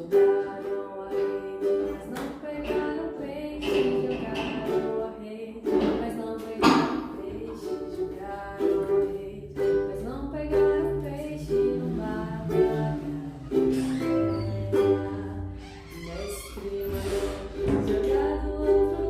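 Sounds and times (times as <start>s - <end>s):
ukulele strumming chords: 0.0s - 15.6s, 17.1s - 19.0s
person singing low: 10.5s - 19.0s.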